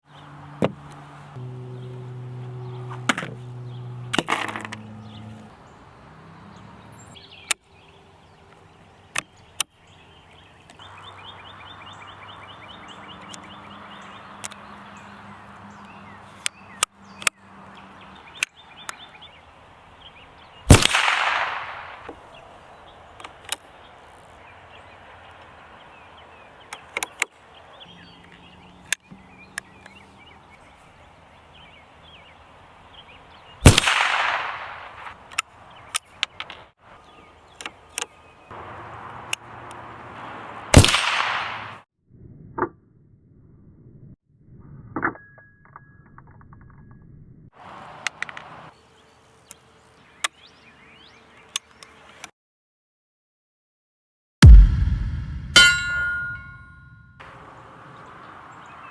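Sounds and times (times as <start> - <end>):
faint birdsong: 0.0 - 41.8, 47.6 - 52.3, 55.6 - 58.9
rifle shots with echo: 20.7 - 22.1, 33.6 - 35.1, 40.8 - 41.8, 54.4 - 56.6.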